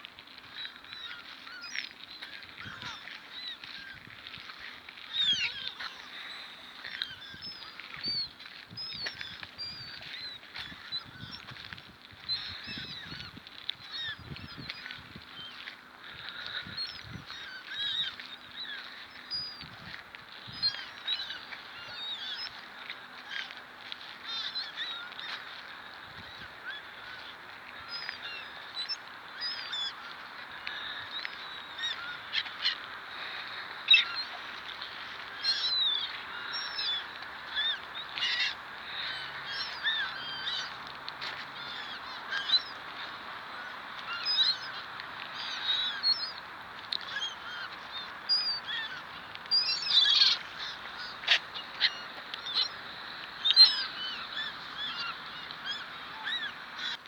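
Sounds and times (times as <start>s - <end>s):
gulls calling: 26.4s - 57.0s.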